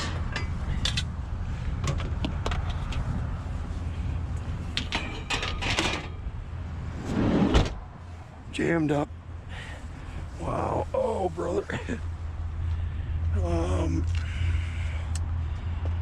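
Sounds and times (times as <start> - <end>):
metal scrap clattering: 4.8 - 6.3.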